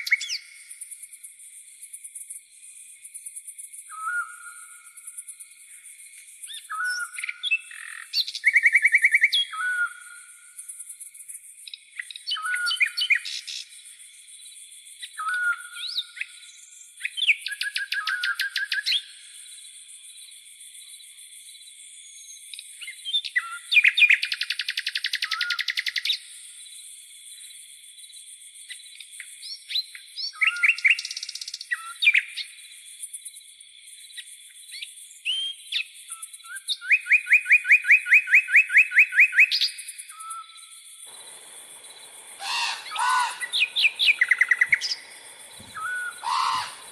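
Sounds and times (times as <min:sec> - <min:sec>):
birds singing: 0:00.0 - 0:00.7, 0:05.7 - 0:10.2, 0:11.6 - 0:14.0, 0:15.0 - 0:19.0, 0:34.2 - 0:46.9
crickets droning: 0:00.0 - 0:46.9.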